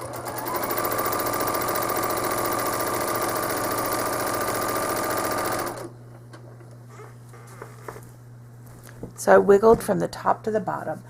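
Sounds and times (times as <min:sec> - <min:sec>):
sewing machine running: 0:00.0 - 0:05.9.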